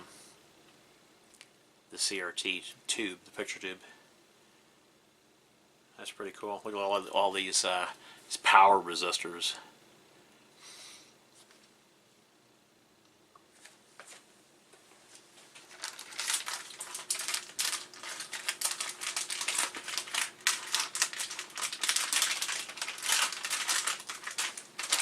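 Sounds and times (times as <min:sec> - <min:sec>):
plastic bag crinkling: 0:15.1 - 0:25.0.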